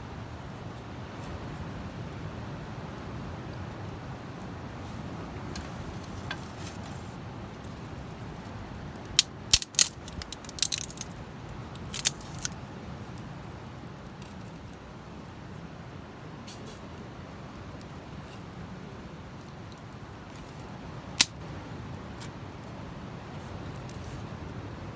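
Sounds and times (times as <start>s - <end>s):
low hiss: 0.0s - 24.9s
sharp clicks and knocks: 9.2s - 11.1s.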